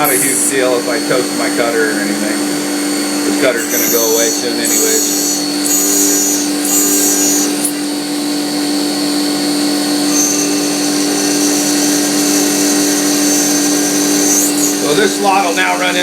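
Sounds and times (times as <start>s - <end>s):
high-pitched cutting hiss: 0.0s - 2.4s, 3.3s - 8.0s
spindle hum: 0.0s - 16.0s.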